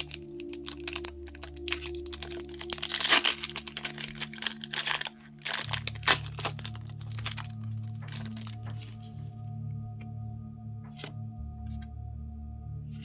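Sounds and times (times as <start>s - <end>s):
cards being handled: 0.0s - 9.3s, 10.9s - 11.9s
foil wrapper crinkling and tearing: 0.0s - 9.3s.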